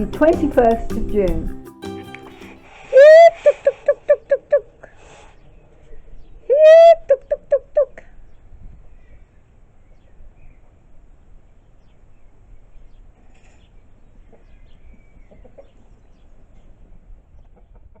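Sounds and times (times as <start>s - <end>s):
hens clucking: 15.2s - 16.0s.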